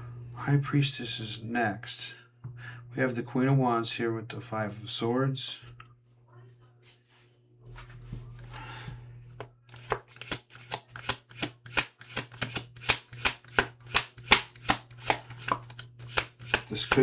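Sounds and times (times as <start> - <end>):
cards rustling: 7.8 - 8.7, 9.3 - 17.0
card slaps: 9.7 - 17.0.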